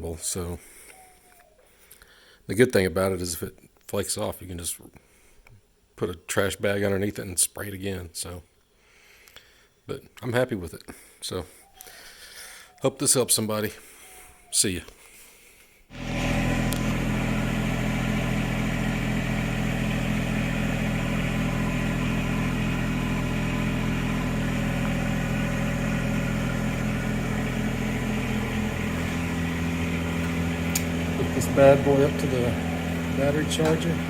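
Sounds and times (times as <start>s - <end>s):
engine idling: 15.9s - 34.0s.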